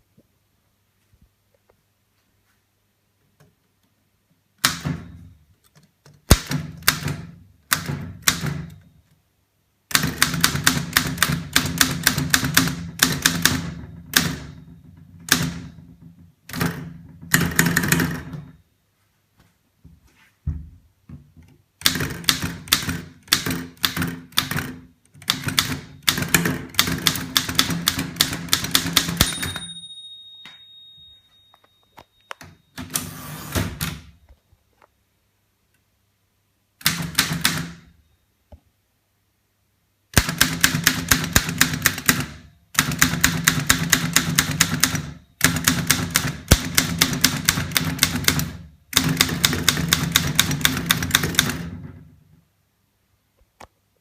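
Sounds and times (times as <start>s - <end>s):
typewriter typebar strikes: 4.6s - 5.3s, 6.2s - 8.9s, 21.8s - 29.8s, 36.8s - 37.9s, 40.2s - 52.0s
typewriter margin bell: 28.9s - 33.1s.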